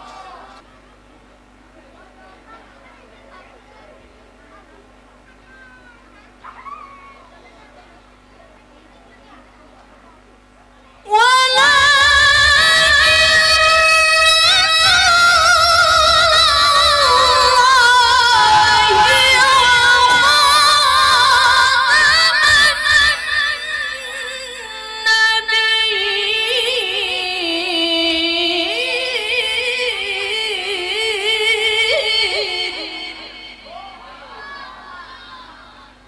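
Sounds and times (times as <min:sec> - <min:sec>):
woman chanting melodic recitation: 0:11.0 - 0:34.3.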